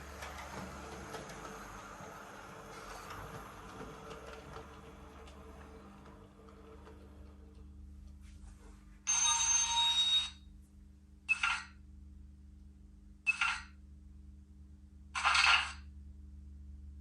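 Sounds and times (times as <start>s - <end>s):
train door sounds from small speaker: 0.0s - 7.6s.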